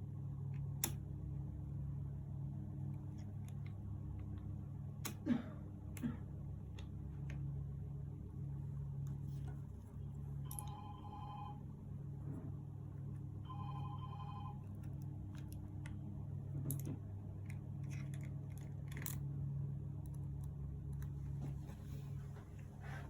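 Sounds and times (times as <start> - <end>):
steady low hum: 0.0 - 23.0
electronic trilling ring: 10.5 - 11.6, 13.4 - 14.7.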